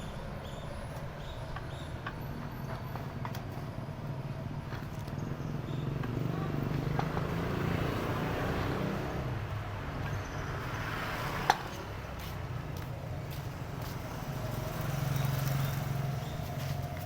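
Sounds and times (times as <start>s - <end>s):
small engine running at low speed: 13.3s - 17.0s.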